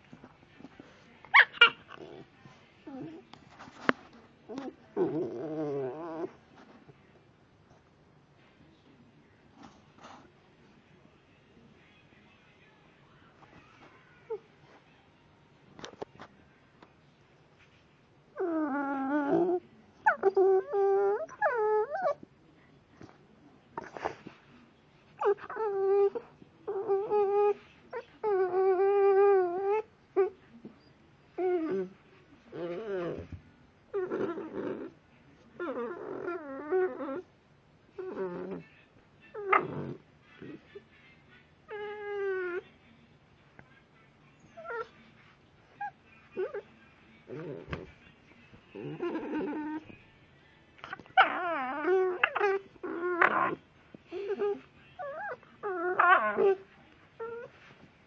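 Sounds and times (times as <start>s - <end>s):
puppy whining: 1.3s - 2.2s, 2.8s - 3.9s, 4.5s - 6.4s, 18.4s - 22.3s, 25.2s - 35.0s, 35.6s - 37.3s, 38.0s - 38.6s, 39.3s - 40.7s, 41.6s - 42.7s, 44.5s - 45.0s, 45.7s - 47.9s, 48.7s - 50.0s, 50.8s - 57.8s.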